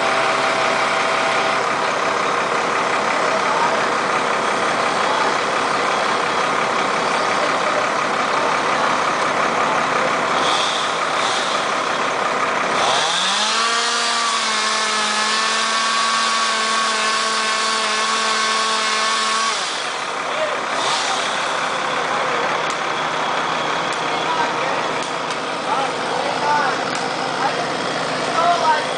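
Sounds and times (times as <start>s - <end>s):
engines running: 0.0s - 28.9s
engine revving high: 10.2s - 12.0s, 12.6s - 21.8s.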